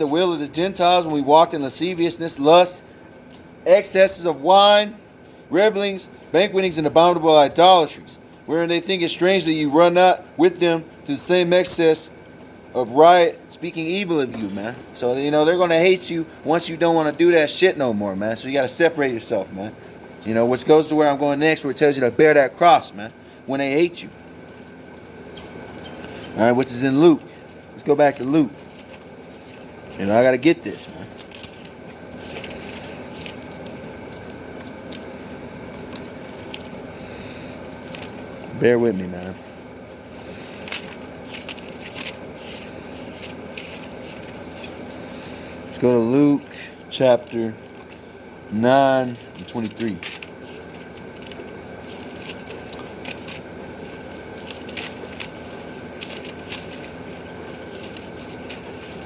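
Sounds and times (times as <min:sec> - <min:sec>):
outdoor background hiss: 0:00.0 - 0:59.0
bird chirping: 0:03.4 - 0:03.7, 0:25.2 - 0:27.9, 0:29.1 - 0:59.0
book pages rustling: 0:28.0 - 0:37.1, 0:37.7 - 0:39.4, 0:40.2 - 0:46.6, 0:47.2 - 0:59.0.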